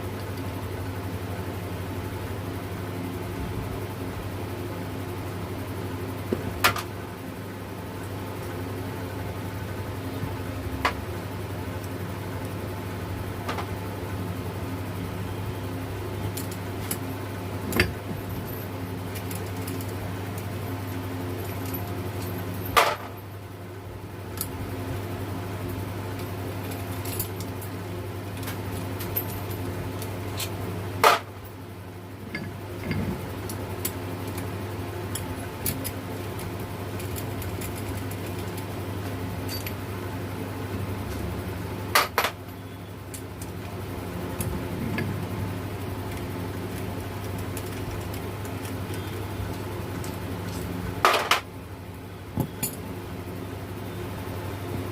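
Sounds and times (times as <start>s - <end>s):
low steady hum: 0.0s - 54.9s
metal parts clinking: 17.7s - 23.3s, 26.2s - 27.8s, 28.4s - 31.3s, 35.1s - 38.6s, 46.1s - 49.2s, 50.0s - 51.5s.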